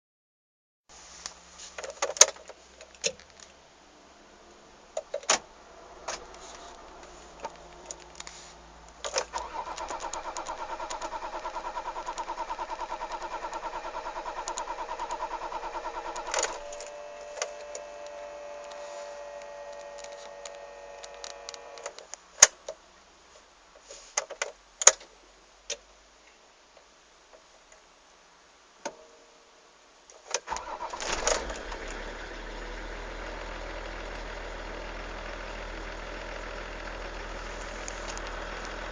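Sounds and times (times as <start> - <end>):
quiet steady whine: 0.9 - 38.9
car starter cranking engine: 9.0 - 22.0, 30.4 - 38.9.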